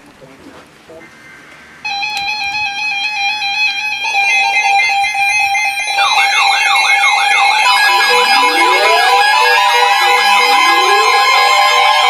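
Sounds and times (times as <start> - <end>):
steady alarm tone: 1.8 - 12.0
second alarm tone: 1.9 - 12.0
warbling siren-like alarm: 1.9 - 12.0.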